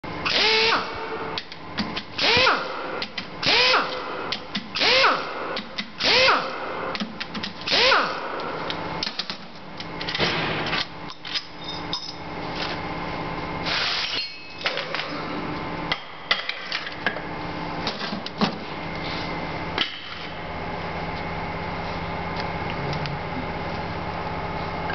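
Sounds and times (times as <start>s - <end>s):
steady hum: 0.0s - 24.9s
power tool bursts rising in pitch: 0.2s - 1.0s, 2.2s - 2.8s, 3.4s - 4.0s, 4.8s - 5.3s, 6.0s - 6.6s, 7.7s - 8.2s.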